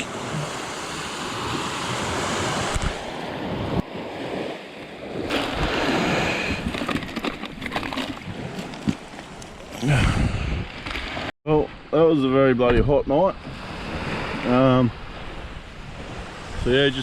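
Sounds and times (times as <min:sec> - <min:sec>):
surf washing onto beach: 0:00.0 - 0:06.8
wind noise on microphone: 0:01.2 - 0:04.4, 0:09.8 - 0:11.2.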